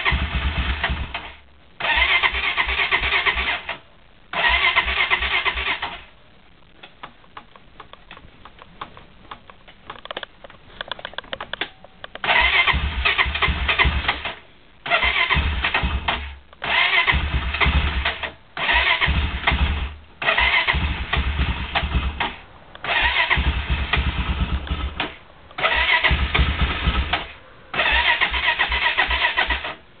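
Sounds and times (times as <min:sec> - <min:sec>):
electric starter cranking engine: 0:00.0 - 0:03.8, 0:12.2 - 0:29.8
faint clicking: 0:06.6 - 0:12.2.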